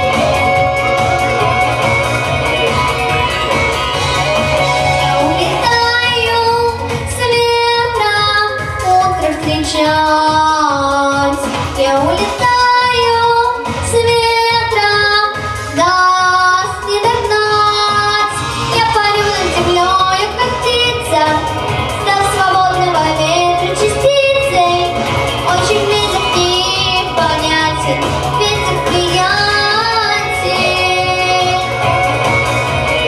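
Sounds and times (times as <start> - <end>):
instrumental backing track: 0.0 - 33.0
girl singing: 5.2 - 31.9.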